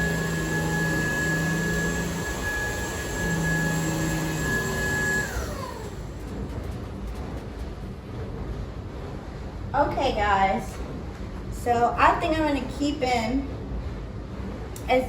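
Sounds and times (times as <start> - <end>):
vacuum motor spinning down: 0.0 - 6.2
stick vacuum running: 0.0 - 8.0.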